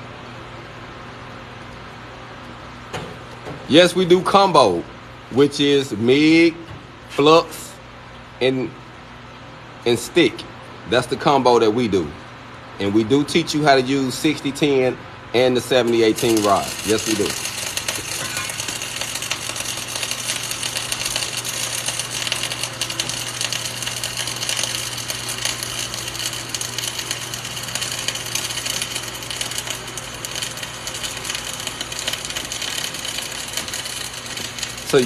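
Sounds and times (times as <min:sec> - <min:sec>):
low electrical hum: 0:00.0 - 0:35.0
welding arc crackle: 0:15.4 - 0:35.0.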